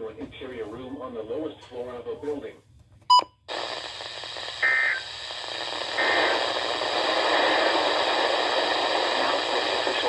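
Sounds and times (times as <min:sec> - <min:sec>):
radio static hiss: 0:03.5 - 0:10.0.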